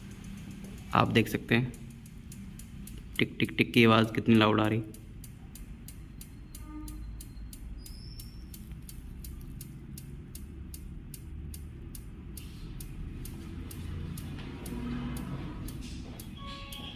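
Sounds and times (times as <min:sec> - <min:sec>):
engine ticking: 0:00.0 - 0:16.9.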